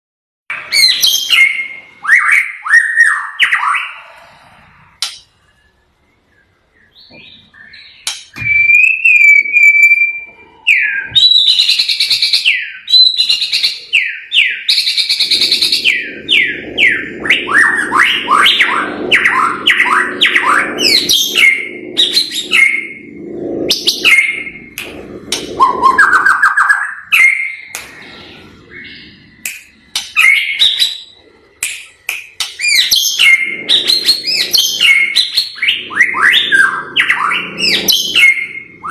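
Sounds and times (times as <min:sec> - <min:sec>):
bird singing: 0:00.5 - 0:31.6, 0:32.3 - 0:38.9
low steady hum: 0:15.1 - 0:30.2.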